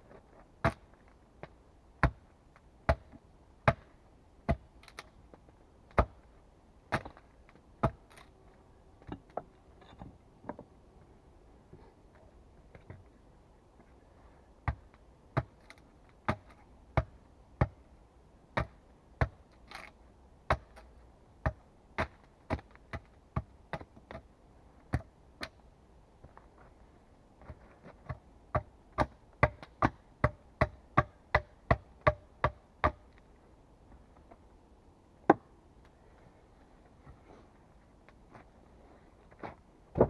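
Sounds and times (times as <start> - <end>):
hand tool striking wood: 28.5 - 33.0.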